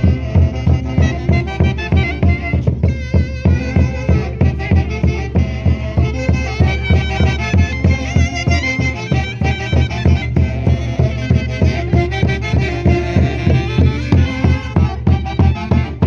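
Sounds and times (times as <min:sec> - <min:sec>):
live folk dance band playing: 0:00.0 - 0:16.0.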